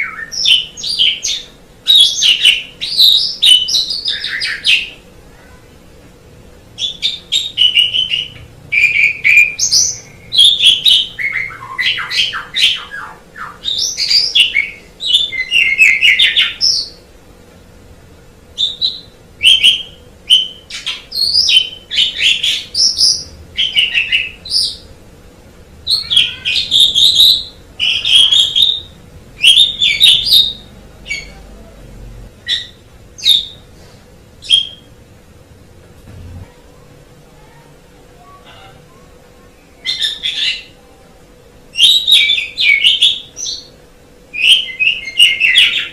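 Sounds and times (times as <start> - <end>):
starling singing: 0.0 - 5.0, 6.7 - 17.1, 18.6 - 25.0, 25.6 - 31.6, 32.4 - 33.8, 34.4 - 35.0, 37.4 - 41.1, 41.7 - 45.9.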